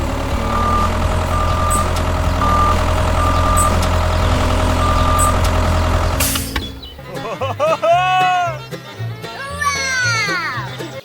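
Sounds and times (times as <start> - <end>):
truck engine running: 0.0 - 7.2
reversing alarm beeping: 0.3 - 5.6.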